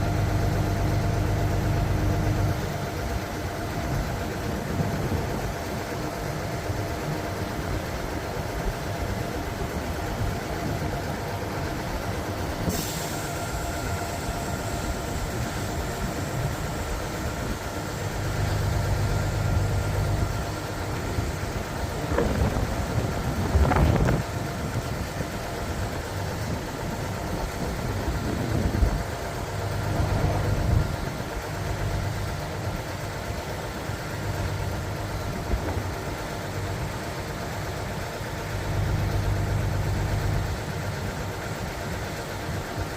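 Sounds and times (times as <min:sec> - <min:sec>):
diesel engine running: 0:00.0 - 0:42.9
short sharp hiss: 0:12.6 - 0:13.4.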